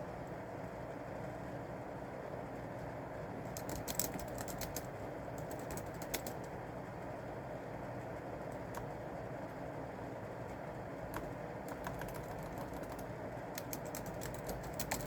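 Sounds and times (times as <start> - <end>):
steady low background noise: 0.0 - 15.0
computer keyboard typing: 3.5 - 6.6, 8.5 - 8.9, 11.1 - 15.0.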